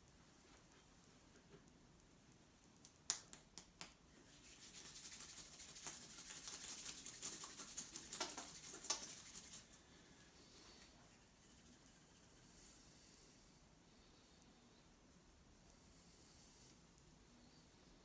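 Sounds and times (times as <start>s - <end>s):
hands rubbing over skin: 4.3s - 9.7s.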